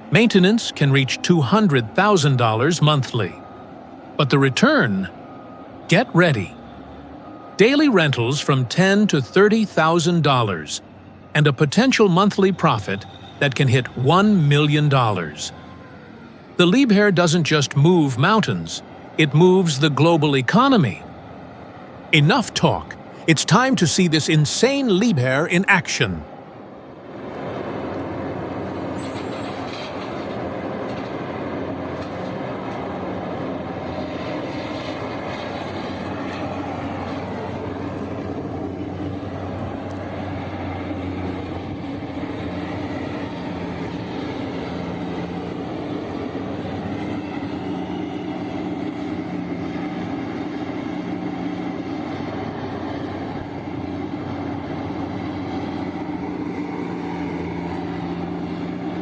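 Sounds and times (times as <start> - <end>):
excavator engine running: 0.0 - 15.6.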